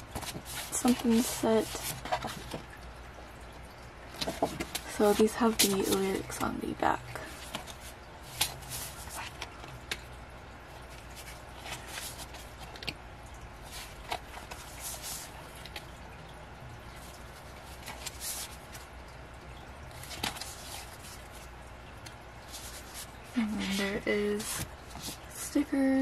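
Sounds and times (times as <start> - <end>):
paper and card rustling: 0.0 - 2.7, 4.1 - 10.0, 10.9 - 13.0, 13.6 - 15.9, 17.0 - 18.9, 19.9 - 21.5, 22.4 - 25.7
low steady hum: 0.0 - 26.0.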